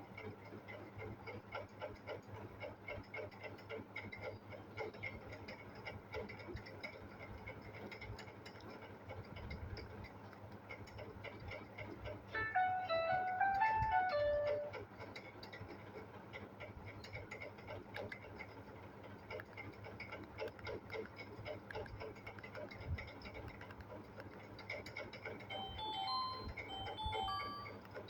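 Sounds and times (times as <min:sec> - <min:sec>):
mobile phone ringtone beeping: 0:12.4 - 0:14.7, 0:25.5 - 0:27.8
low room noise: 0:12.4 - 0:14.8, 0:25.2 - 0:28.0.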